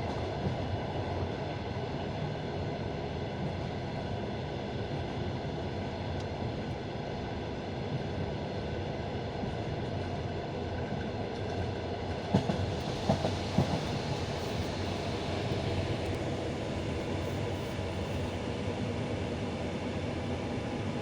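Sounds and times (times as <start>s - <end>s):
train rolling rumble: 4.8s - 21.0s.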